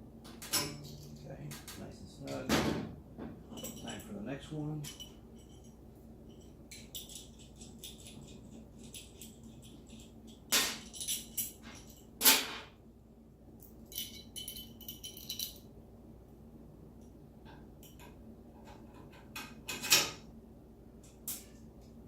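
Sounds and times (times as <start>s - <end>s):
metal hardware clinking: 3.5s - 4.2s, 4.8s - 12.5s.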